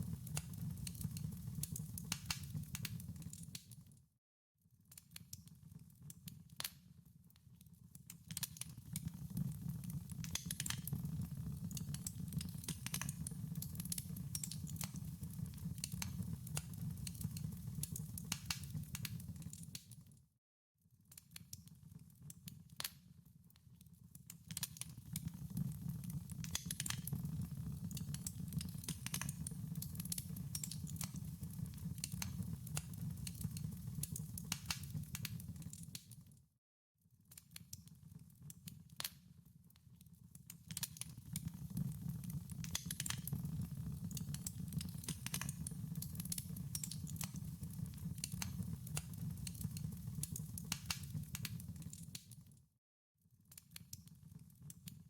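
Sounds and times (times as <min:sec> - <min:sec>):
wood fire crackling: 0:00.0 - 0:03.6, 0:08.3 - 0:19.8, 0:24.5 - 0:36.1, 0:40.7 - 0:52.3.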